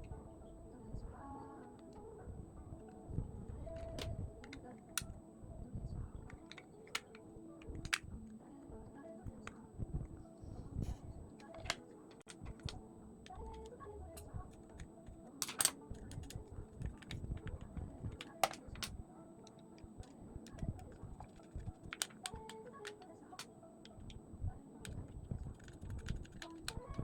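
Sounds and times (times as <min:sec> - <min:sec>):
faint background music: 0:00.0 - 0:27.0.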